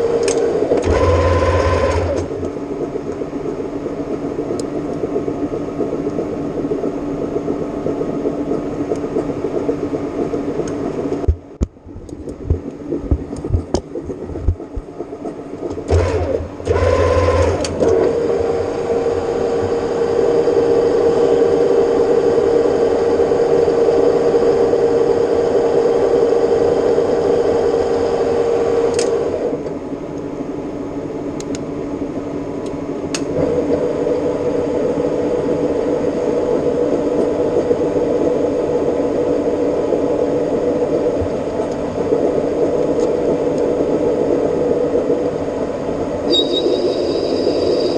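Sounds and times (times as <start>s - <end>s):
metal lathe whining: 0.0s - 2.4s.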